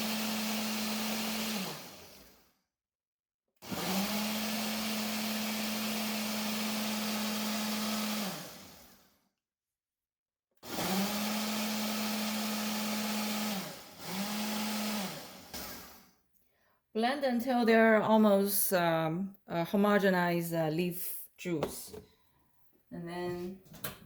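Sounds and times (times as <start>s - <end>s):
blender motor running: 0.0s - 2.6s, 3.6s - 9.2s, 10.6s - 16.2s.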